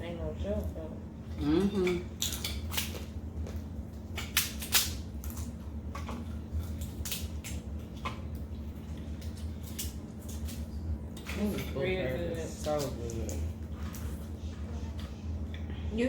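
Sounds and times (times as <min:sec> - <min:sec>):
crab shells cracking: 0:02.1 - 0:08.5.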